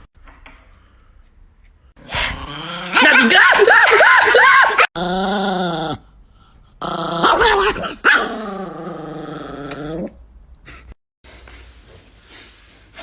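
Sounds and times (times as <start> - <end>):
dog growling cries: 2.1 - 6.0.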